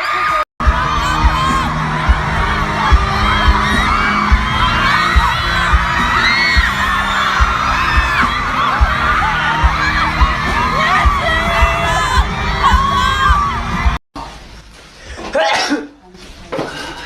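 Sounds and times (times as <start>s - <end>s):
crowd screaming and cheering: 0.0s - 14.0s
loud music with thudding bass: 0.6s - 14.0s.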